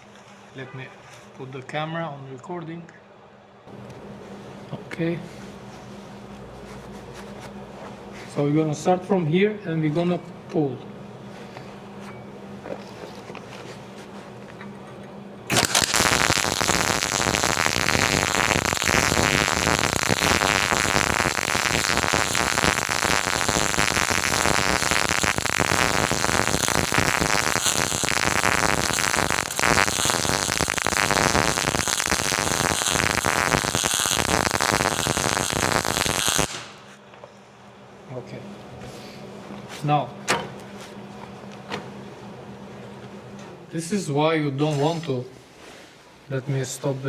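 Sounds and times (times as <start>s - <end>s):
welding arc crackling: 15.5s - 37.0s.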